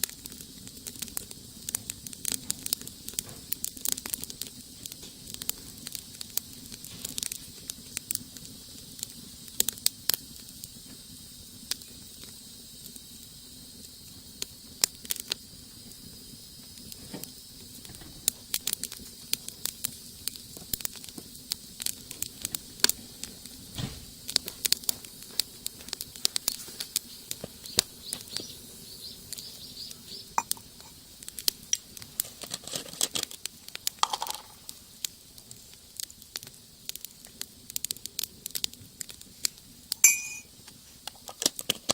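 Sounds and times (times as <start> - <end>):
wood fire crackling and popping: 0.0 - 41.9.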